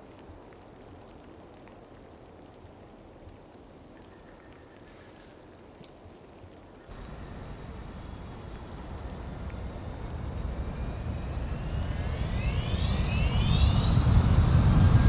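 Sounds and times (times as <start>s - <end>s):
engine-like rumble: 6.9s - 15.0s
rising whine: 6.9s - 15.0s.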